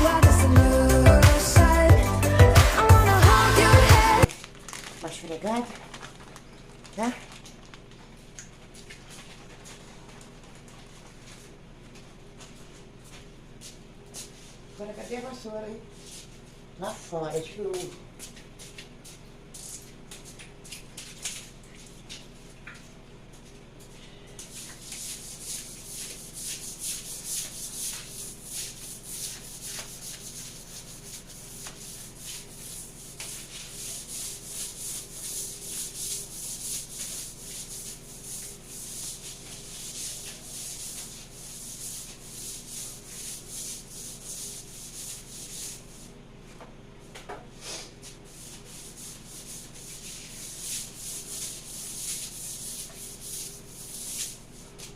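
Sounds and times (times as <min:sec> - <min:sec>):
broom scrubbing a floor: 0:17.6 - 0:22.3, 0:24.4 - 0:46.1, 0:47.6 - 0:54.9.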